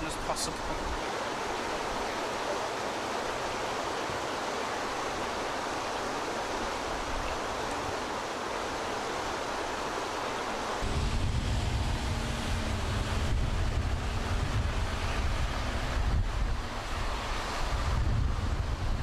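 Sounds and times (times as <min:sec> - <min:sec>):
rushing floodwater: 0:00.0 - 0:19.0
wind buffeting microphone: 0:10.8 - 0:19.0.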